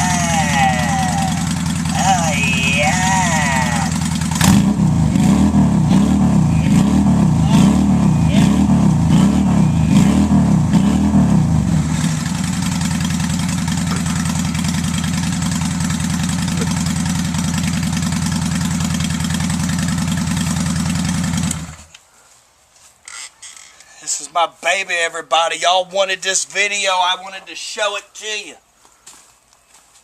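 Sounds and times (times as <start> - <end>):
motorcycle engine revving and idling: 0.0 - 21.9.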